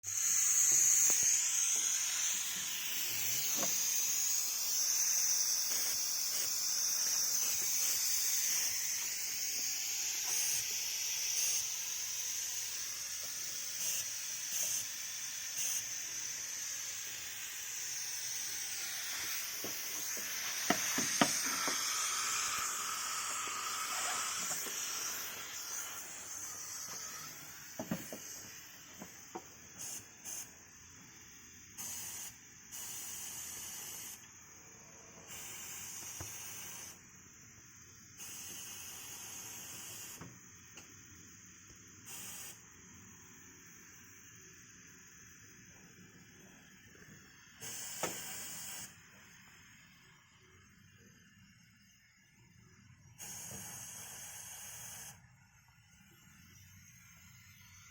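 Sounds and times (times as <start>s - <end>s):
smoke machine hissing: 0.0s - 57.9s.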